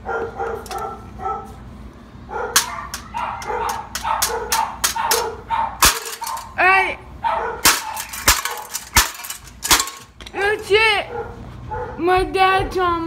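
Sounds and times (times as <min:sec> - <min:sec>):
dog barking: 0:00.0 - 0:01.6, 0:02.3 - 0:06.6, 0:07.2 - 0:08.8, 0:11.0 - 0:12.1.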